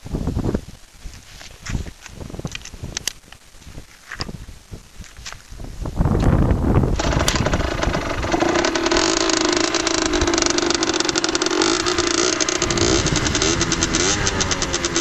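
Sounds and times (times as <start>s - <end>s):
two-stroke motorcycle engine running: 6.9s - 15.0s.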